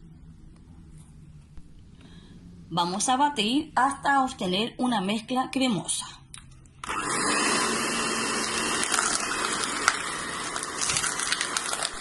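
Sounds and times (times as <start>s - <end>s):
electric hand mixer beating: 6.8s - 12.0s.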